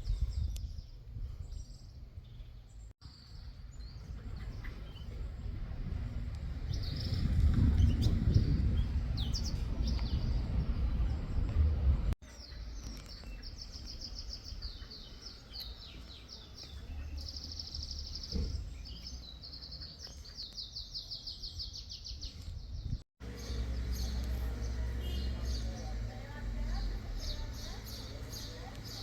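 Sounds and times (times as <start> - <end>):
small songbirds singing: 0.0 - 5.5, 6.1 - 11.6, 12.2 - 29.0
low rumble on microphone: 0.0 - 12.2.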